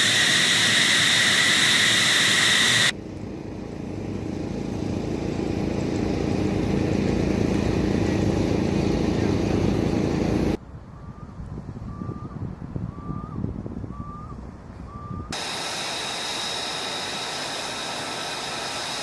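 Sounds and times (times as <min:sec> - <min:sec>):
jet engine whine and hiss: 0:00.0 - 0:10.6, 0:15.3 - 0:19.0
low engine rumble: 0:02.9 - 0:15.4.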